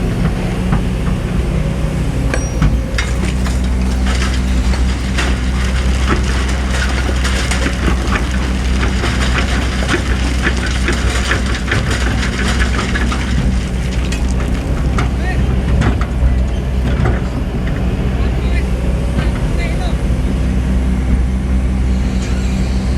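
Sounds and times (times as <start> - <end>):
diesel engine running: 0.0 - 22.2
sand and stones scraping: 2.1 - 19.0
small knocks: 2.2 - 18.0.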